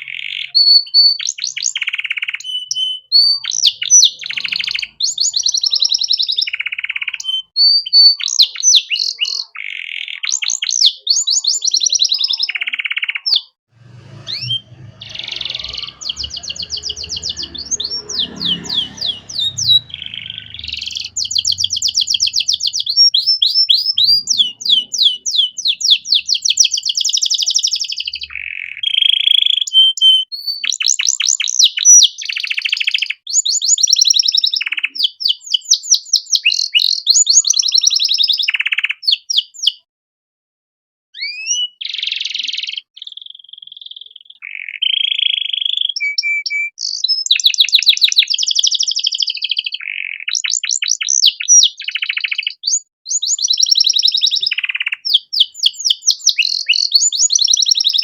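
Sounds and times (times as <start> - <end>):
canary singing trills: 0.0 - 39.8, 41.2 - 58.0.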